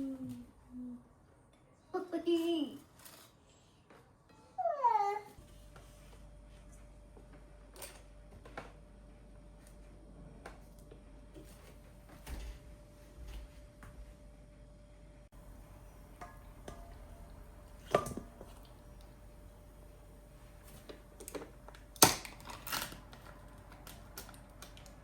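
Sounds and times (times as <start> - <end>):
faint steady hum: 5.4 - 25.0.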